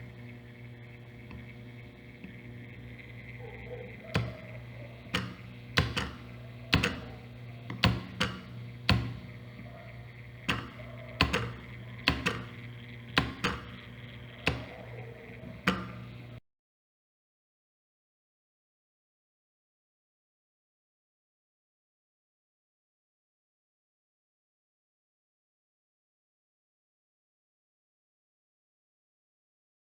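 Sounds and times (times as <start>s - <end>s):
steady low hum: 0.0s - 16.4s
telegraph key clicking: 0.0s - 16.4s.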